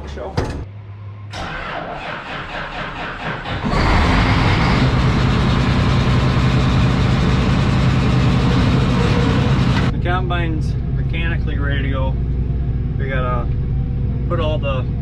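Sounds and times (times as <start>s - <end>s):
diesel engine cranking on starter: 1.3s - 9.9s
diesel engine running: 3.4s - 15.0s.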